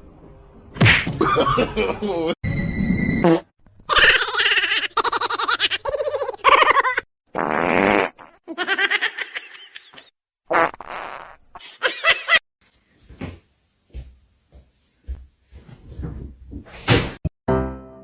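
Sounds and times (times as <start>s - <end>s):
laughter: 1.2s - 2.4s, 8.5s - 10.1s, 11.8s - 12.4s
fart-like blat: 7.4s - 8.4s, 10.5s - 11.4s.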